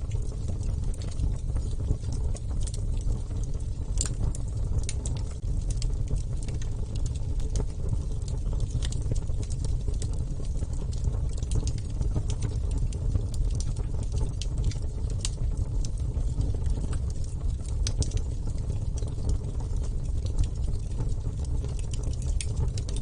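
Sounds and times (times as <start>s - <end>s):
wood fire crackling: 0.0s - 23.0s.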